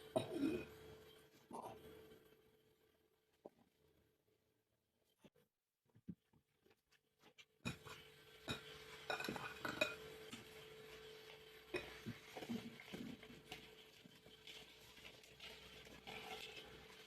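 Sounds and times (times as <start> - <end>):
crockery and cutlery clinking: 8.5 - 10.0.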